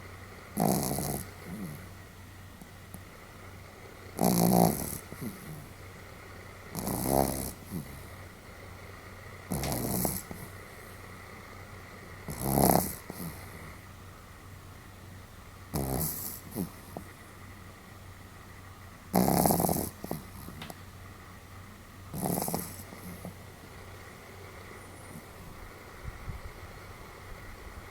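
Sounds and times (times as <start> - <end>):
dog snoring: 0.5 - 2.0, 4.0 - 5.8, 6.5 - 8.4, 9.4 - 11.3, 12.2 - 13.8, 15.7 - 17.3, 19.1 - 20.8, 22.1 - 25.6.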